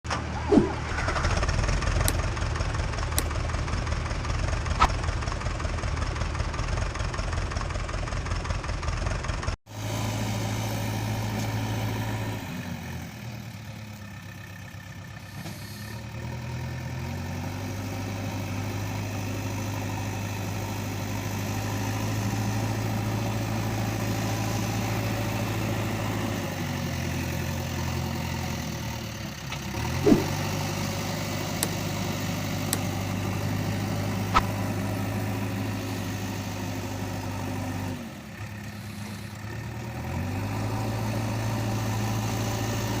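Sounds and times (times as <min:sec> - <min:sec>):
engine idling: 0:00.1 - 0:12.2, 0:12.8 - 0:17.2.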